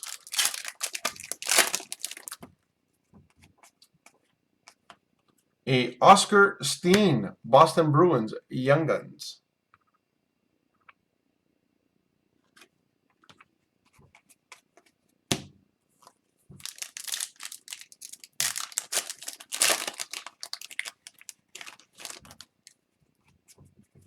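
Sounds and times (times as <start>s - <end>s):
foil wrapper crinkling and tearing: 0.0s - 2.4s, 16.6s - 22.8s.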